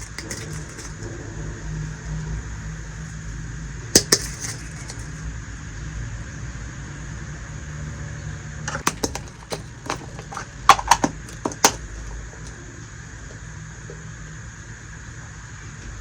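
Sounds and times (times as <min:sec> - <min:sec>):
toy kitchen pieces clicking: 0:00.0 - 0:01.0, 0:04.0 - 0:05.2, 0:08.7 - 0:12.6
low hum: 0:00.0 - 0:05.9.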